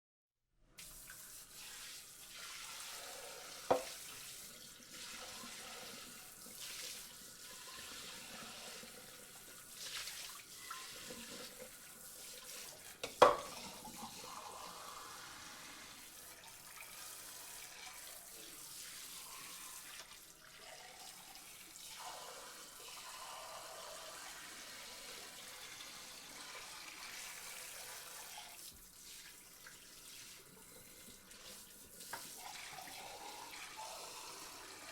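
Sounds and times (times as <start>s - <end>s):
tap water running: 0.8s - 34.9s
dishware clinking: 13.0s - 13.5s
dishes shifting: 13.0s - 13.6s.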